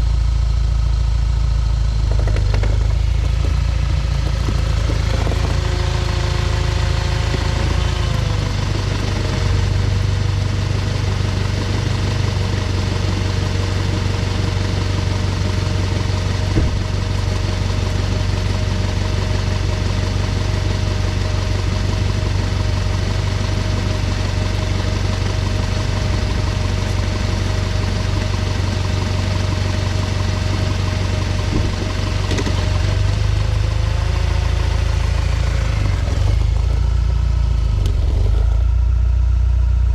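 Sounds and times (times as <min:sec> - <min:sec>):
car engine running at low revs: 0:00.0 - 0:39.9
driveline rattle: 0:02.0 - 0:09.4.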